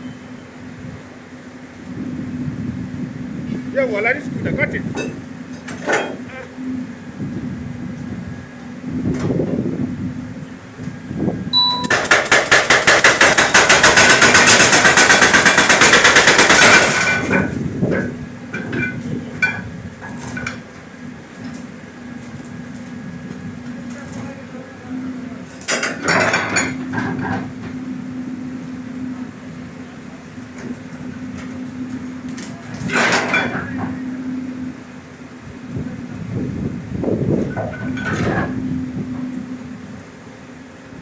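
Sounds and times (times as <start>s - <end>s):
low machine hum: 0.0s - 41.0s
jackhammer pounding concrete: 11.8s - 18.0s.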